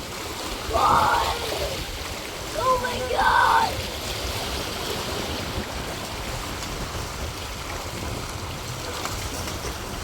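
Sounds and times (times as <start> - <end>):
surf washing against rocks: 0.0 - 10.0
water rushing: 0.0 - 10.0.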